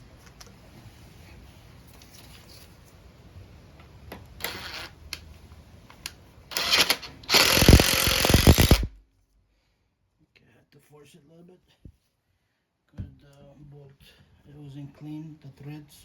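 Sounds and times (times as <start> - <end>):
power driver driving bolt: 6.5 - 9.0.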